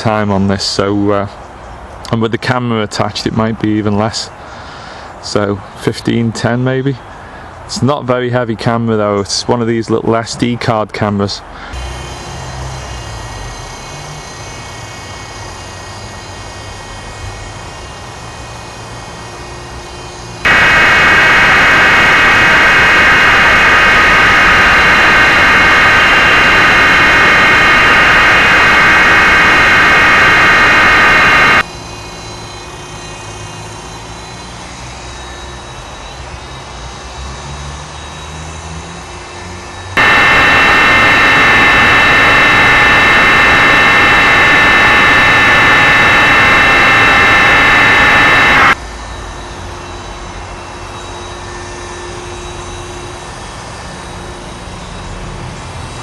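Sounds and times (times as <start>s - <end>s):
toy helicopter motor whine: 11.8s - 20.4s
low hum: 20.5s - 31.7s, 40.0s - 48.8s.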